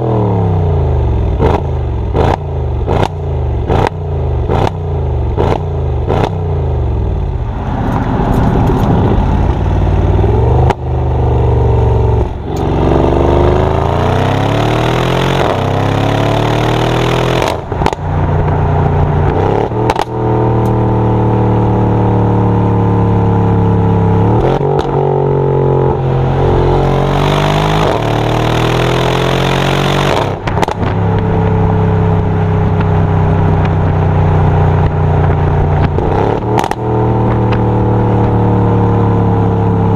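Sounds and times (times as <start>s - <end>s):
car engine accelerating: 0.0s - 39.9s
exhaust crack: 1.3s - 11.0s, 15.4s - 20.8s, 29.9s - 38.6s.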